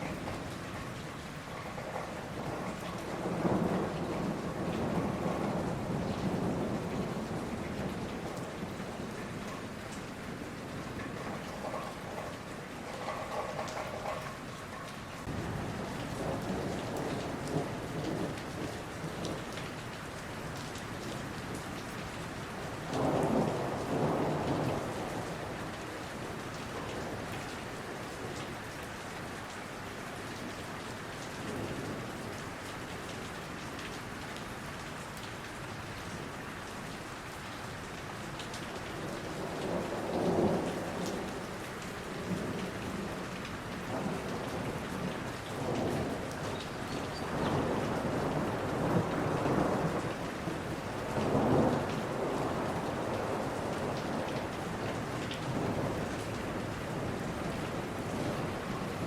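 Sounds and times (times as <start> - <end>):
thunder rolling: 0.0 - 19.4, 43.9 - 59.0
steady rain falling: 0.0 - 59.0.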